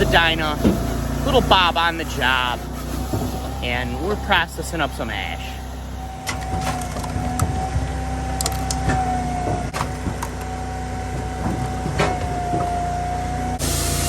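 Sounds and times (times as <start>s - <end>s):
hydraulic whine: 0.0s - 14.0s
machine engine humming: 0.0s - 14.0s
wood knocks and clunks: 0.4s - 1.1s, 6.1s - 13.6s
loud hiss: 13.6s - 14.0s.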